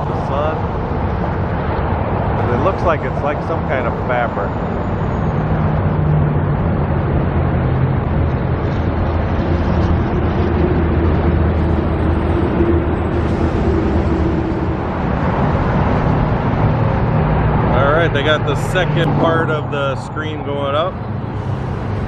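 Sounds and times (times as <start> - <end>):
low engine drone: 0.0 - 22.0
road traffic passing: 0.0 - 22.0
steady hum: 9.1 - 17.3.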